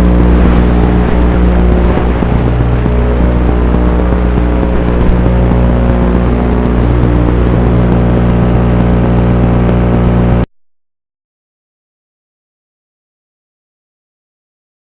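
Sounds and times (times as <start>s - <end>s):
quadcopter motors buzzing: 0.0s - 10.4s.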